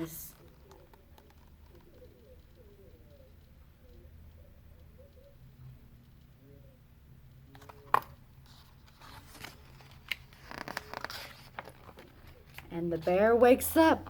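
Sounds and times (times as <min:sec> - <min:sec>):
paper rustle: 0:07.6 - 0:12.7.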